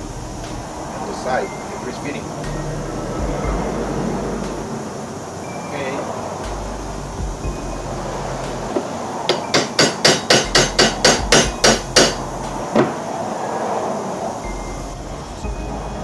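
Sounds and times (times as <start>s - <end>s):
hammer striking metal joint: 8.7s - 13.0s.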